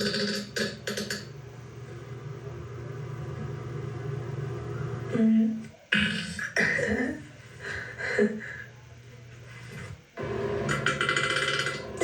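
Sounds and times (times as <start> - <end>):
loud fart: 0.0 - 1.3, 5.9 - 7.0, 10.7 - 12.0.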